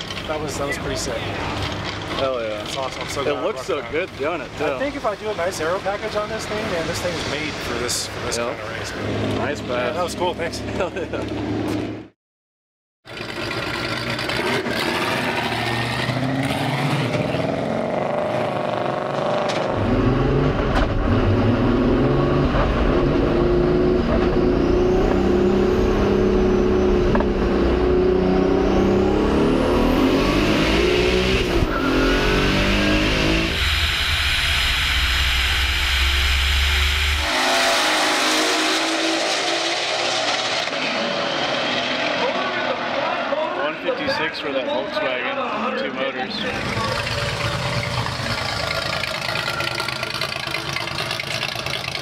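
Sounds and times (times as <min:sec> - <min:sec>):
car engine at full throttle: 0:13.1 - 0:43.4, 0:46.4 - 0:52.0.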